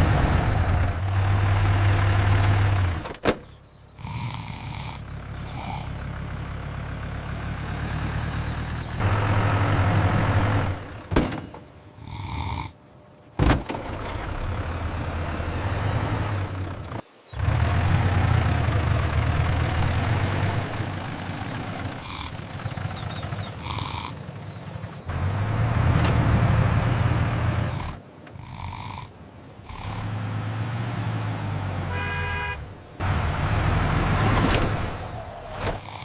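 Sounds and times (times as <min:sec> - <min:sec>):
tractor engine rumbling: 0:00.0 - 0:36.0
short honk-like tone: 0:31.9 - 0:32.6.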